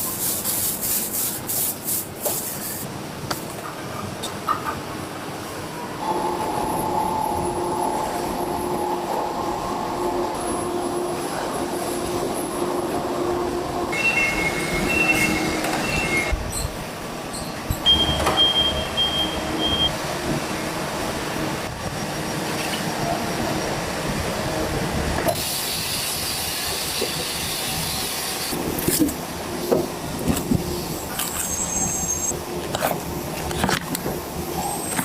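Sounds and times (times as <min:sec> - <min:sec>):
high metallic whines and squeals: 0:13.6 - 0:19.9, 0:31.3 - 0:32.4.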